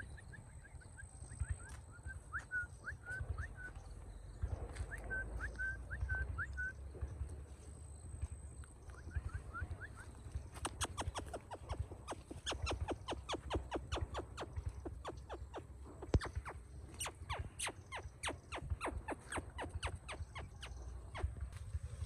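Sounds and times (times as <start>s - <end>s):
parrot chirping: 9.0s - 21.3s.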